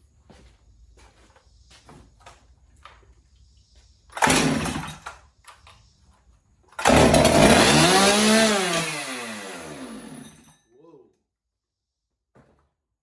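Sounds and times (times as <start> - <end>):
chainsaw starting and running: 4.2 - 5.1, 6.8 - 10.5.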